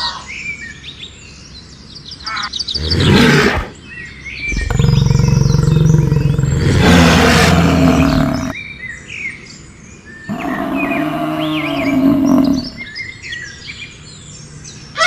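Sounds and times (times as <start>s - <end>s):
birds chirping: 0.0s - 15.0s
large animal low call: 4.5s - 8.6s, 10.3s - 12.9s.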